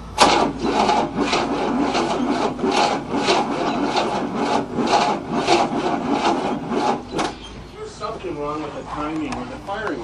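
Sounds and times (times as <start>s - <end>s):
starter motor cranking engine: 0.0s - 7.7s.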